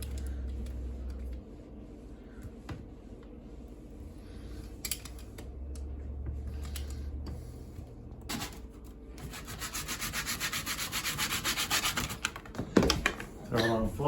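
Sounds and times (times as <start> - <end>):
hand sanding strokes: 9.2 - 12.2.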